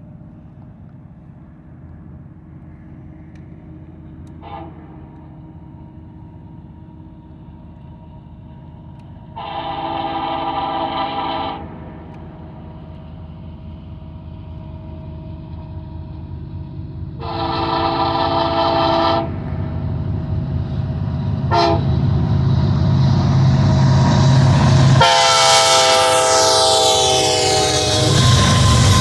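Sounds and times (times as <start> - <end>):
diesel engines rumbling: 0.0 - 29.0
locomotive air horn blasts: 4.4 - 5.1, 9.4 - 11.8, 17.2 - 19.4, 21.5 - 22.0, 24.9 - 29.0.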